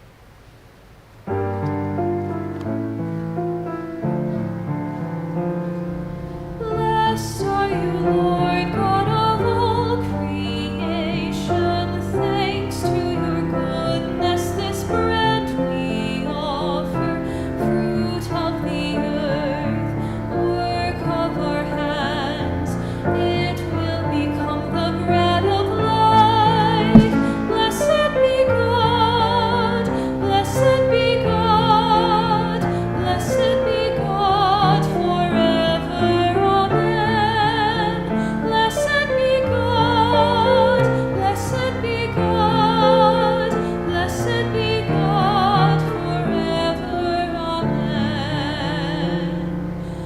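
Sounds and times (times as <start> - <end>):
woman singing with vibrato: 6.6 - 50.0
instrumental accompaniment: 26.1 - 28.2.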